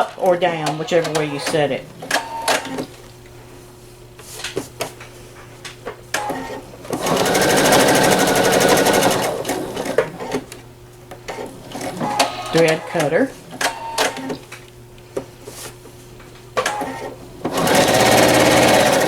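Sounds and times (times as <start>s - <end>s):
sewing machine stitching: 0.5s - 2.9s, 6.2s - 10.5s, 16.6s - 19.0s.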